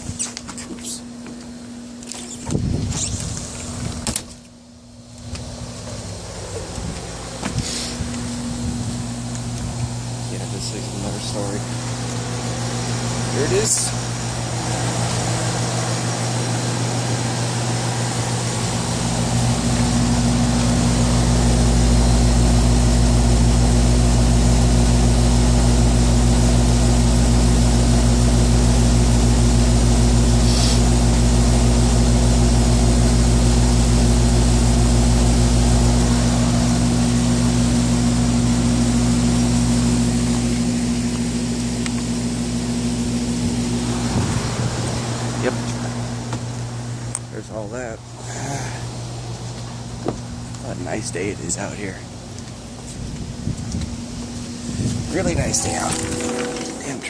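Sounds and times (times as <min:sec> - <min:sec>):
air conditioning unit humming: 0:00.0 - 0:57.0
deep low rumble: 0:05.4 - 0:15.4.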